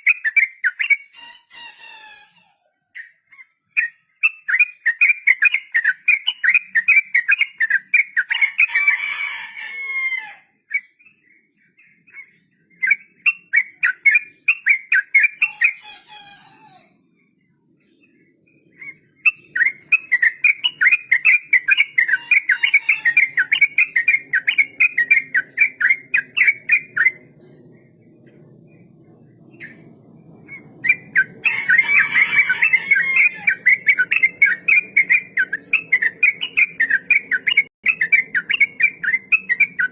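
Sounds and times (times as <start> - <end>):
bird singing rattling notes: 17.1 - 39.9.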